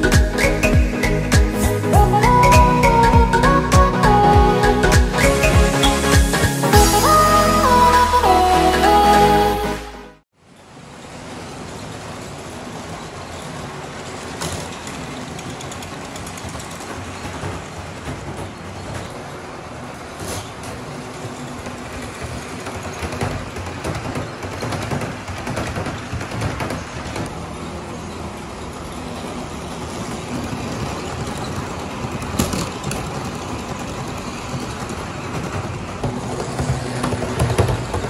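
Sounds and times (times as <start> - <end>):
wheels rattling over rails: 10.4 - 38.0.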